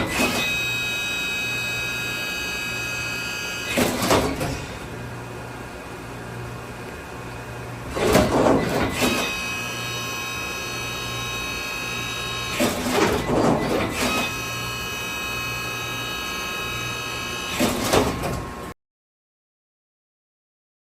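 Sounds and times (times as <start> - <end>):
high-pitched spindle whine: 0.0 - 3.9, 9.0 - 12.8, 13.8 - 17.6
loud noisy machining bursts: 0.0 - 5.0, 7.9 - 18.3
low machine hum: 0.0 - 17.6.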